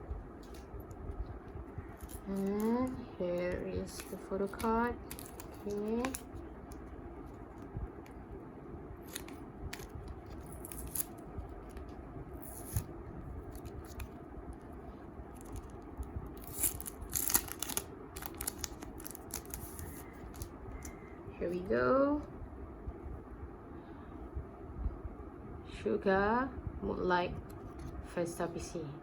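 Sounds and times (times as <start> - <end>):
faint steady hum: 0.0 - 29.0
packaging tearing: 3.9 - 6.3, 9.1 - 11.8, 15.4 - 20.9.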